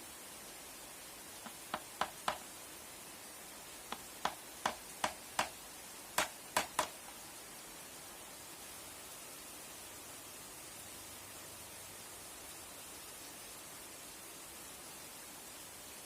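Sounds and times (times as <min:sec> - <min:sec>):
hammer tapping nails: 0:01.5 - 0:02.4, 0:03.9 - 0:05.6, 0:06.2 - 0:07.0.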